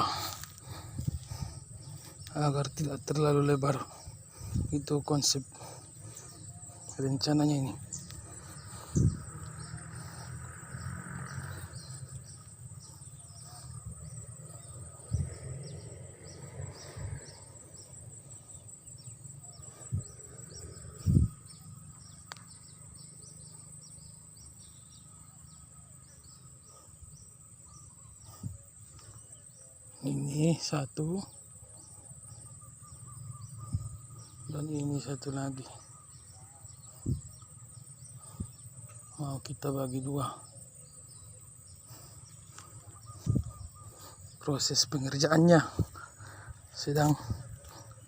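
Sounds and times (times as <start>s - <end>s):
insect chorus droning and chirping: 0.0s - 48.0s
dull low thumps: 7.8s - 9.8s.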